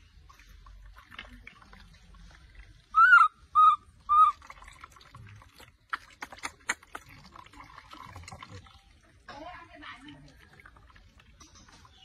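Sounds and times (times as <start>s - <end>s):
water splashing and dripping: 0.0s - 12.0s
baby monkey high-pitched calls: 2.9s - 4.4s.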